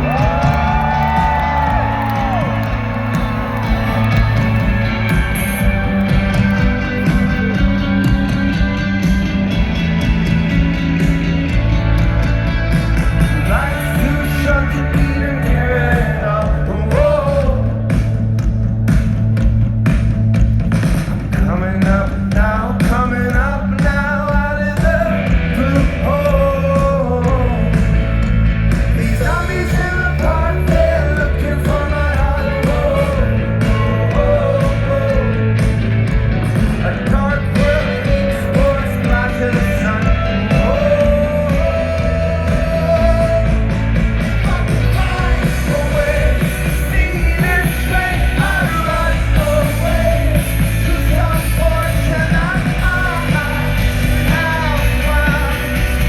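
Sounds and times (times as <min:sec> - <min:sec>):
live rock band playing: 0:00.0 - 0:56.0
man singing: 0:13.3 - 0:18.0, 0:21.1 - 0:28.2, 0:28.9 - 0:56.0.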